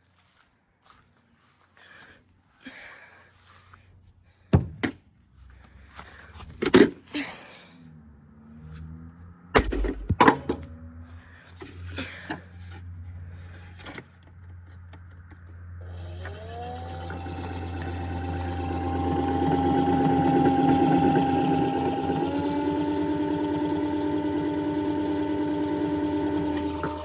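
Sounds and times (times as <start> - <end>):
steady low hum: 15.4 - 27.0.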